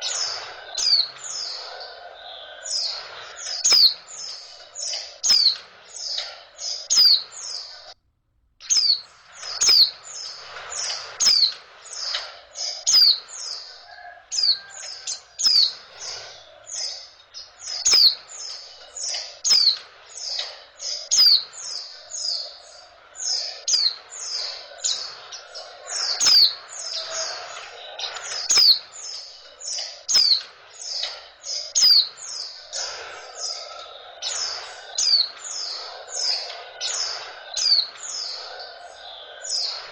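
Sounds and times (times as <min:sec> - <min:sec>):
bird chirping: 0:00.0 - 0:08.0, 0:08.6 - 0:39.9.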